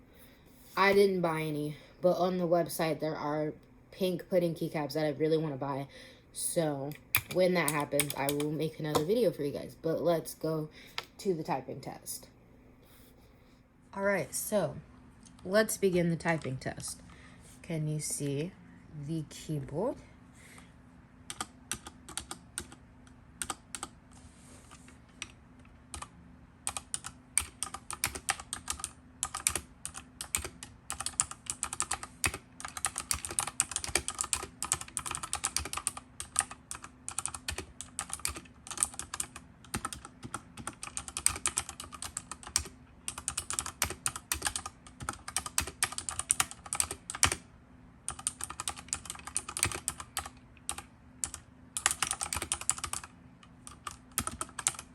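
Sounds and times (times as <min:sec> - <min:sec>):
mechanical keyboard typing: 0:06.9 - 0:09.2, 0:21.3 - 0:22.8, 0:23.4 - 0:23.9, 0:25.2 - 0:47.4, 0:48.1 - 0:54.9.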